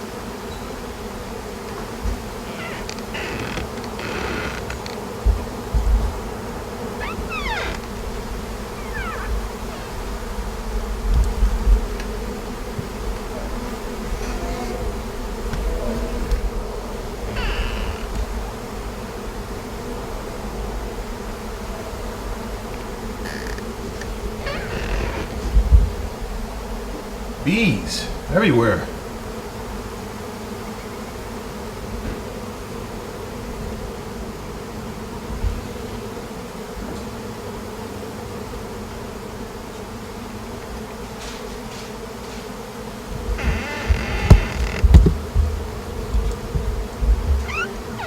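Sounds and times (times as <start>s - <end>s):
bees buzzing: 0.0s - 48.0s
bumps on microphone: 43.4s - 48.0s.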